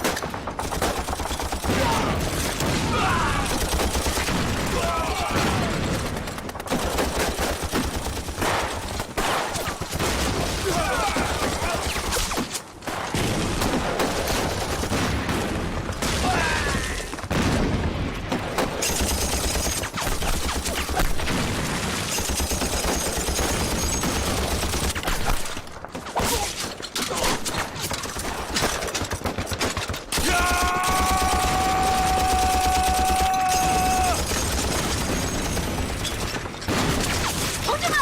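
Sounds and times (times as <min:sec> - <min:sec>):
rifle and machine-gun fire: 0:00.0 - 0:26.0, 0:27.3 - 0:38.0.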